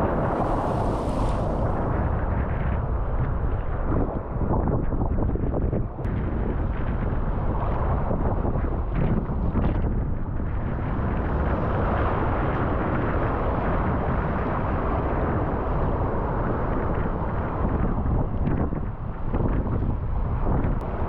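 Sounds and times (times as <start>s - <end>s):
ocean surf rushing: 0.0s - 2.9s
wind buffeting microphone: 0.0s - 21.0s.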